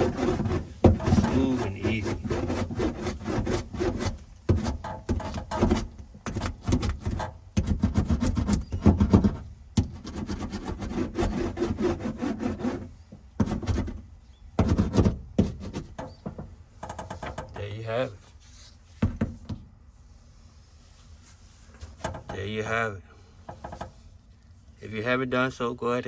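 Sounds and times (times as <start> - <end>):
hand roller rasping over mat: 0.0 - 17.4.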